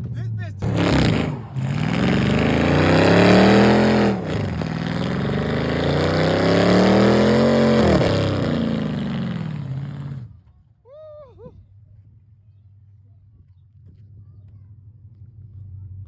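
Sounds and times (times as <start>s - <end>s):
car engine revving: 0.6s - 10.3s.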